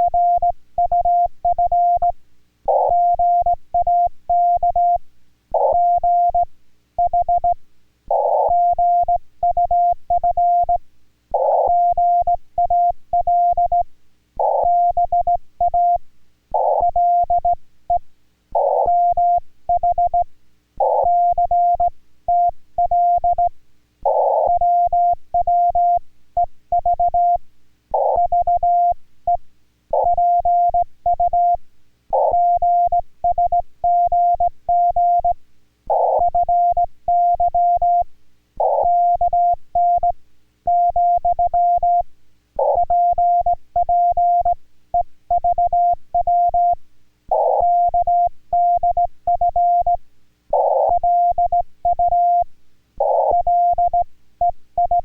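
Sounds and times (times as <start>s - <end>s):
morse code tone: 50.6s - 55.0s.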